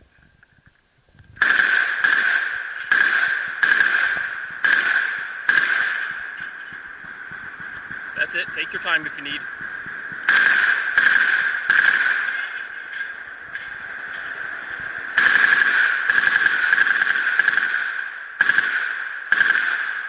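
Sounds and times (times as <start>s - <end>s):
submachine gun bursts: 1.4s - 6.2s, 10.3s - 12.8s, 15.2s - 19.9s
steady ringing tone: 1.6s - 20.0s.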